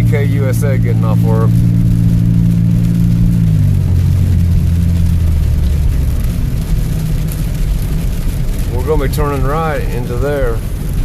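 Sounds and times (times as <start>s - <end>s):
car engine drone from inside: 0.0s - 11.0s
road noise: 0.0s - 11.0s.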